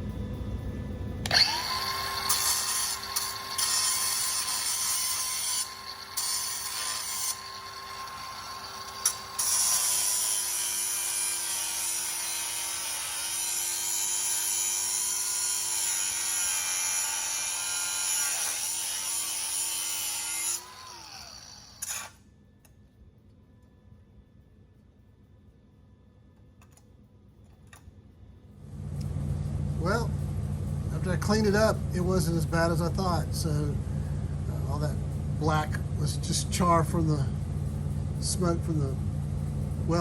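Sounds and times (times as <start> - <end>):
rotary tool motor whine: 1.2 - 22.2.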